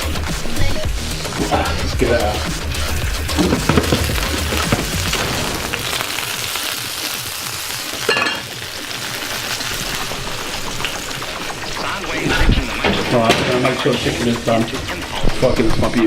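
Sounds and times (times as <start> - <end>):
oil sizzling as food fries: 2.1 - 16.0
metallic clink: 8.1 - 8.5.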